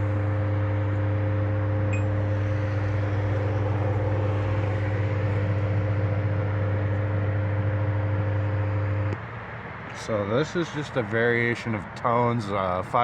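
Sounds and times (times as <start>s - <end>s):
steady electronic tones: 0.0s - 9.2s
strong low hum: 0.0s - 9.2s.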